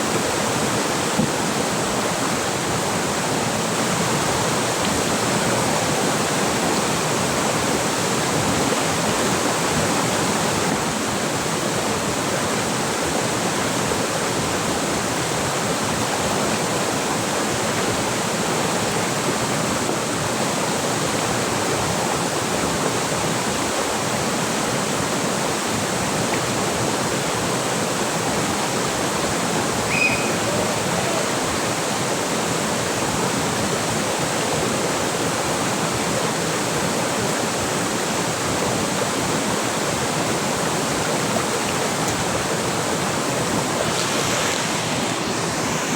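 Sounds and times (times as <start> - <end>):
river water rushing: 0.0 - 45.9
high chirp: 29.9 - 30.7.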